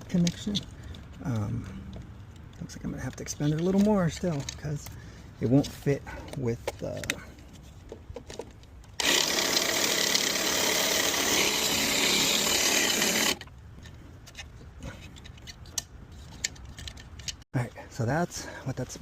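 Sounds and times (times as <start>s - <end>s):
power drill running: 9.0s - 13.4s.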